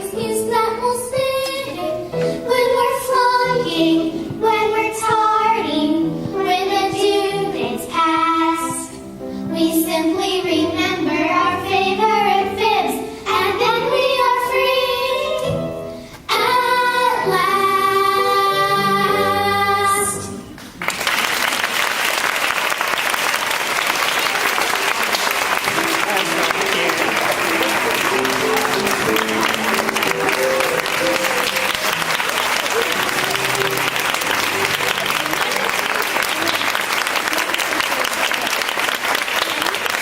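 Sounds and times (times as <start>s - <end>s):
children singing: 0.0s - 8.9s, 9.6s - 15.6s, 16.3s - 20.4s.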